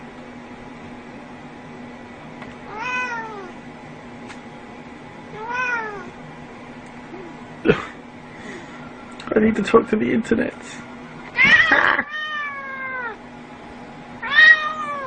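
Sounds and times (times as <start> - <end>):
steady low hum: 0.0 - 15.0
cat meowing: 2.7 - 3.6, 5.3 - 6.1, 11.4 - 13.2, 14.2 - 15.0.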